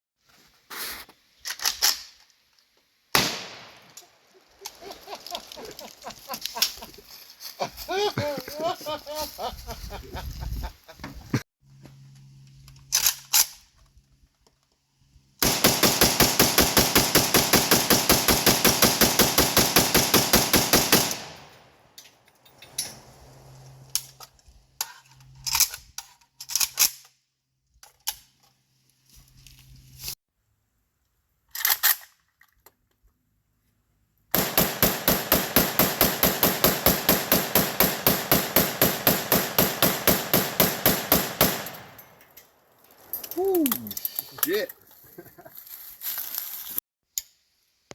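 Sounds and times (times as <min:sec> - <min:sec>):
metallic clicks of rifle handling: 0:01.4 - 0:02.4, 0:12.6 - 0:13.7, 0:23.9 - 0:27.2, 0:31.5 - 0:33.0
rifle firing rapidly: 0:15.4 - 0:21.5, 0:34.4 - 0:41.9.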